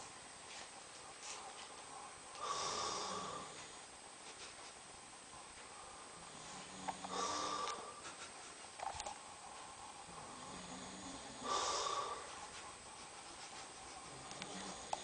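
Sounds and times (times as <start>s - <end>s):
man snoring heavily: 2.4s - 3.6s, 6.3s - 7.8s, 10.2s - 12.3s.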